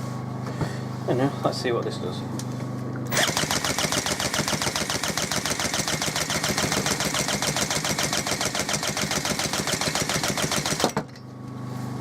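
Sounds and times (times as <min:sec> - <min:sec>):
chainsaw engine cranking without starting: 0:03.1 - 0:11.0.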